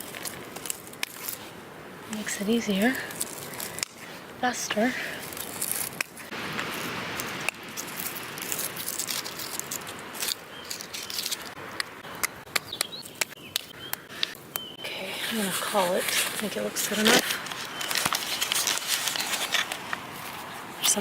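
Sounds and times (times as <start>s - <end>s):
foliage rustling: 0.0s - 21.0s
birds chirping: 1.4s - 6.3s, 9.6s - 21.0s
hand pruners snipping stems: 2.1s - 21.0s.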